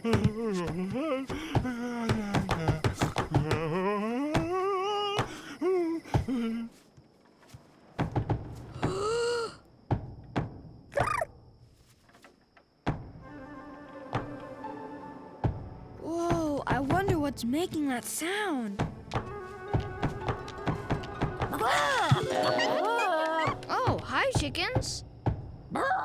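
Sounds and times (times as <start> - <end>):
short swooping tones: 11.0 - 11.3
wobbling sliding cartoon melody: 11.0 - 11.3.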